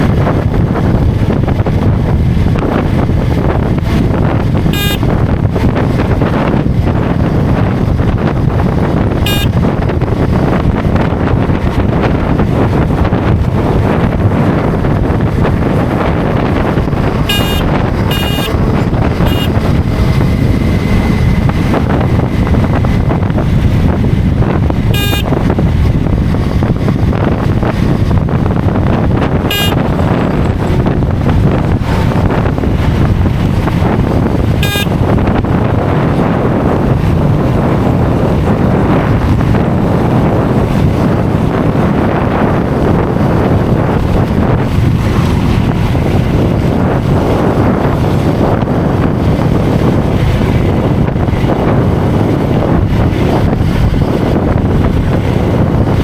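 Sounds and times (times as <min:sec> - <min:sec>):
motorcycle engine and road noise: 0:00.0 - 0:56.0
wind buffeting microphone: 0:00.0 - 0:56.0
short high beeps: 0:04.8 - 0:05.0, 0:09.3 - 0:09.6, 0:17.3 - 0:18.6, 0:19.2 - 0:19.6, 0:25.0 - 0:25.3, 0:29.5 - 0:29.8, 0:34.6 - 0:34.9.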